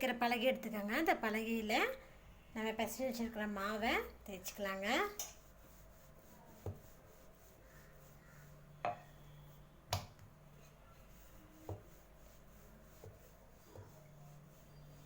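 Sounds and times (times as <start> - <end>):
rolling pin knocking on board: 11.6 - 11.9.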